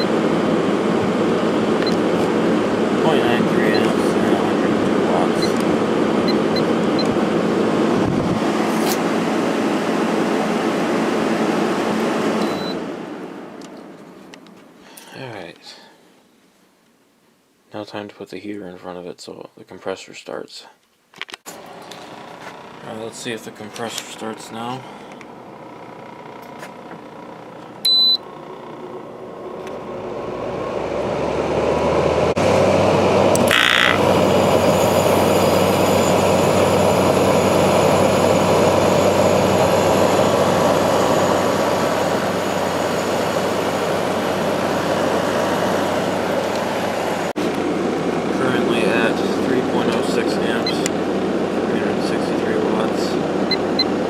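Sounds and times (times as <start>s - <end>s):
air conditioner control panel beep: 0.0s - 0.3s, 1.8s - 2.1s, 3.5s - 4.1s, 5.2s - 7.2s, 12.4s - 12.9s, 27.8s - 28.3s, 33.4s - 34.1s, 50.5s - 51.0s, 53.4s - 54.0s
air conditioner fan rushing air: 0.0s - 15.9s, 21.5s - 54.0s
low hum: 22.8s - 54.0s.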